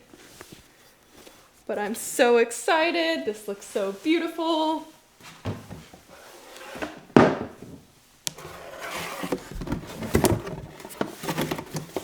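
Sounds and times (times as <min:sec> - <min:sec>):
cardboard rustling and scraping: 0:05.2 - 0:07.4, 0:08.3 - 0:12.0.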